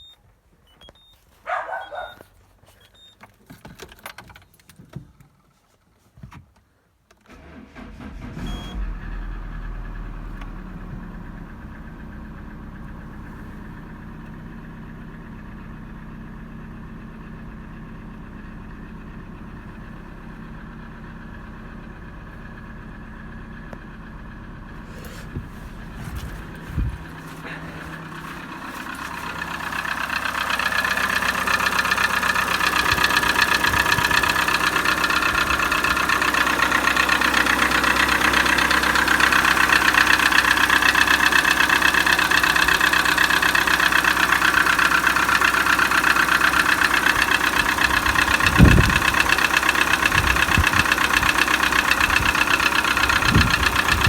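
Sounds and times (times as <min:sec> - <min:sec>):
car engine starting and idling: 0:00.0 - 0:05.3, 0:06.7 - 0:54.0
engine knock: 0:21.5 - 0:54.0.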